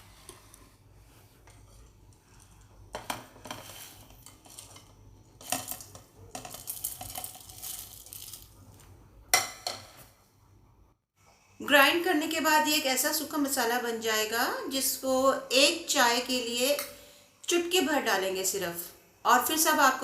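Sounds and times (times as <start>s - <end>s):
spices rattling into grinder jar: 5.4s - 8.5s.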